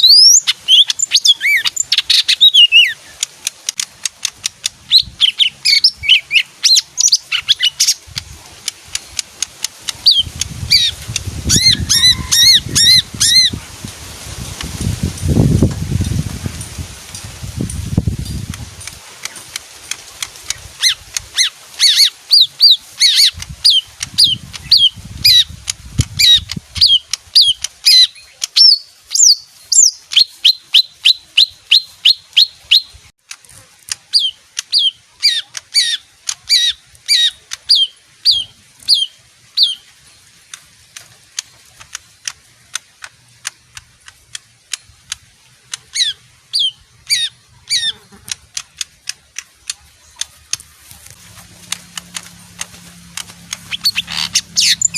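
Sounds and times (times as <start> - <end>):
songbird singing sharp notes: 0.0 - 13.6, 26.2 - 33.1, 34.0 - 40.5, 45.8 - 54.9.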